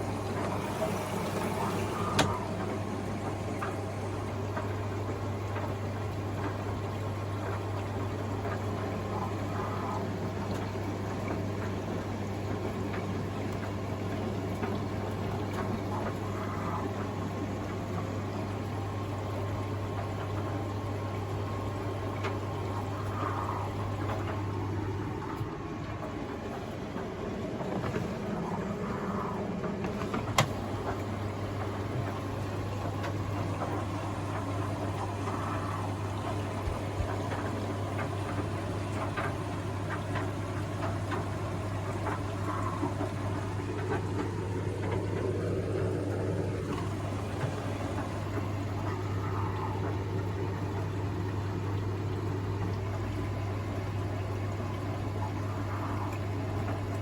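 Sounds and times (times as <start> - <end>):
washing machine clicks: 0.0 - 7.1, 29.6 - 35.2
washing machine running: 0.0 - 57.0.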